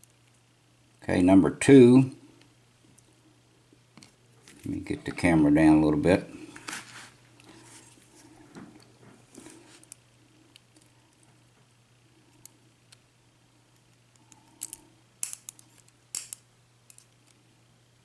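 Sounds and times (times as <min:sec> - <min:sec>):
small metal lock parts clicking: 0:14.4 - 0:17.2.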